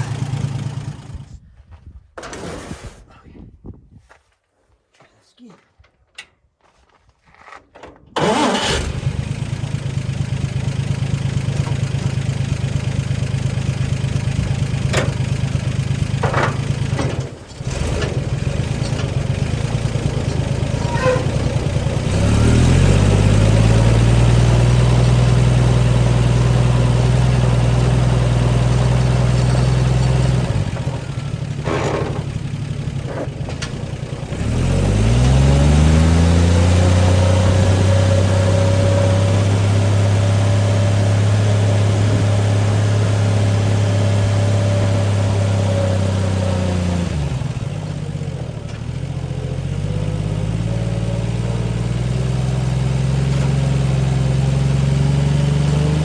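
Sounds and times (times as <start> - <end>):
chainsaw engine revving: 0.0 - 1.2, 8.2 - 10.0, 17.6 - 31.9, 34.2 - 40.2.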